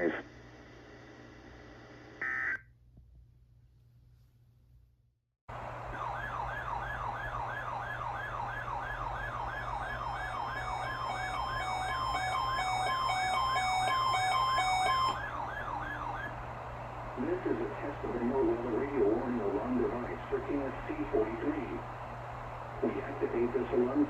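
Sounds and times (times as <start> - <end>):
rising sweep warning alarm: 5.6 - 24.0.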